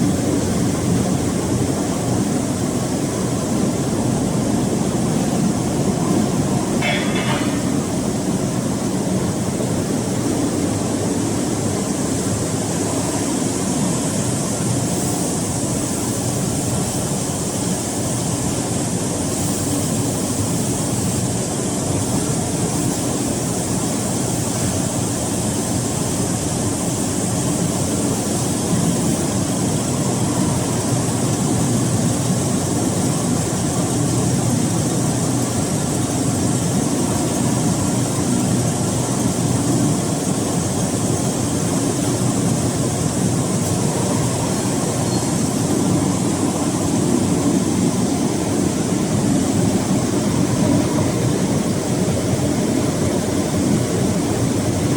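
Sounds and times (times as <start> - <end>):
baler machine hum: 3.6 - 9.6.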